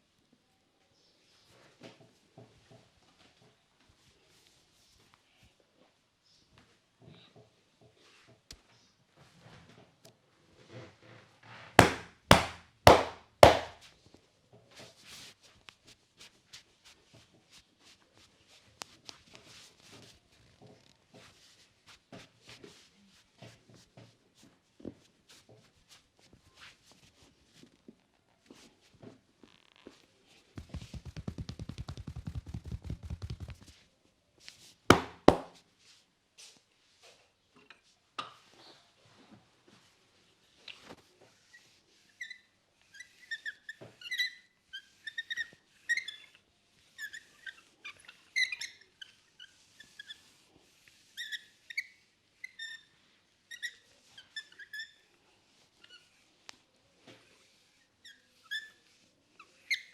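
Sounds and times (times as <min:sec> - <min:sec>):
faint taps and rustles: 0:01.4 - 0:10.2, 0:11.8 - 0:36.6
hands rubbing and tapping hair: 0:11.8 - 0:13.8, 0:30.6 - 0:33.9, 0:34.9 - 0:35.6
hands slapping in head massage: 0:11.8 - 0:13.8, 0:30.6 - 0:33.8, 0:34.9 - 0:35.5.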